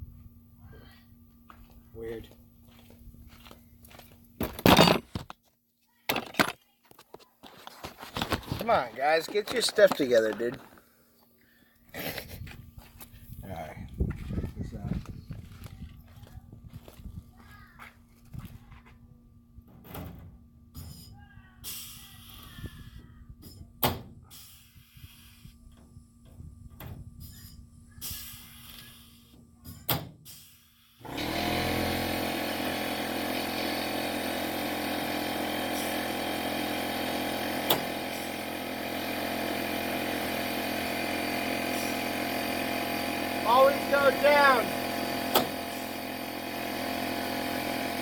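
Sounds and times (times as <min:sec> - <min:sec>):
machine motor humming: 0:31.1 - 0:48.0.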